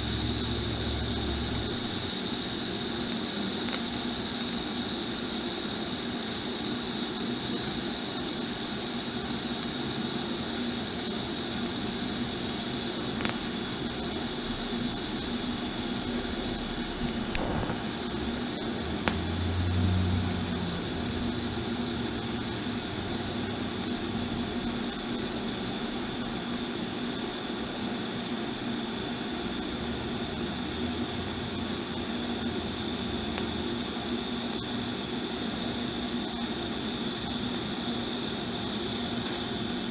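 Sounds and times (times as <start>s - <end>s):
welder hissing with high whine: 0.0s - 39.9s.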